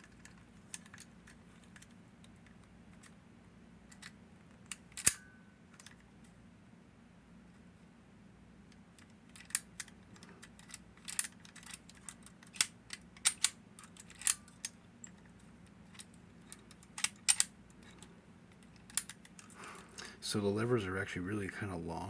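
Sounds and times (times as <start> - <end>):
padlock metallic clicks: 3.9 - 6.0, 8.7 - 19.5.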